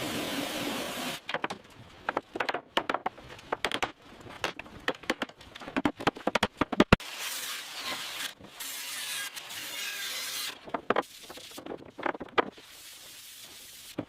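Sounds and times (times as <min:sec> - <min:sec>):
sharp knocks and clicks: 0:01.2 - 0:07.0.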